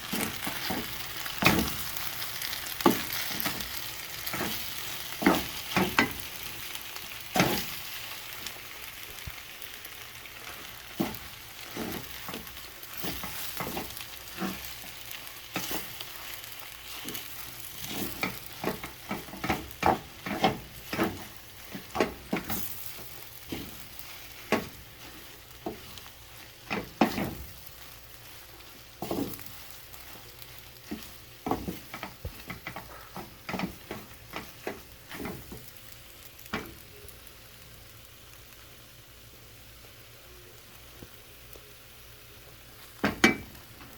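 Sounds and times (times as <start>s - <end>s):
spatula scraping and knocking pan: 0.0s - 7.8s, 10.5s - 36.8s, 43.0s - 43.9s
food sizzling in a pan: 0.0s - 43.9s.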